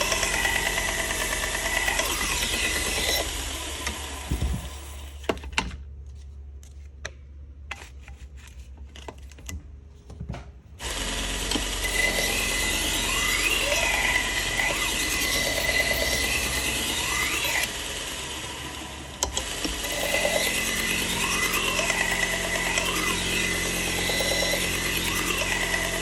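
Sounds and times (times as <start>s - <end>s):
belt sander whining: 0.0s - 5.3s, 10.8s - 26.0s.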